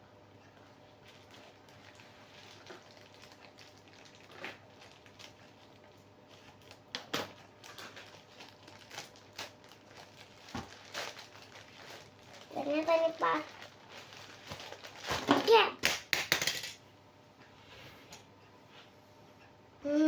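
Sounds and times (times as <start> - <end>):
packaging crackling: 1.1 - 16.4.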